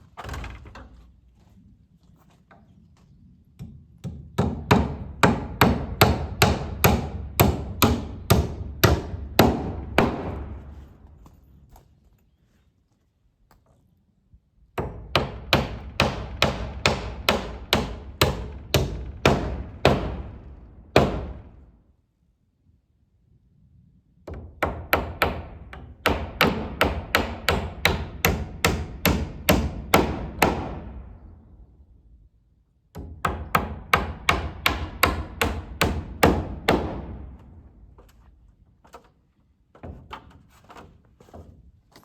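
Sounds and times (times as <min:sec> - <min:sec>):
hammer driving nails into wood: 0:04.0 - 0:10.7, 0:14.8 - 0:21.5, 0:24.3 - 0:31.0, 0:32.9 - 0:37.5.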